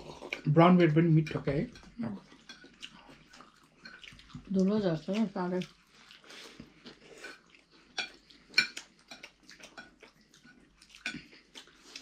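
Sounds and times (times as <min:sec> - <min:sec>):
cutlery clinking on plates: 0:07.2 - 0:11.4.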